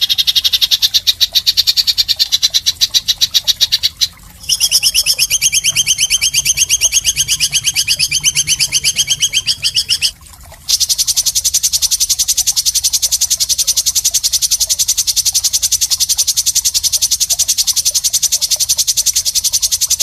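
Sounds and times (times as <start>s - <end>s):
high-pitched pulsed animal trill: 2.4s - 10.1s.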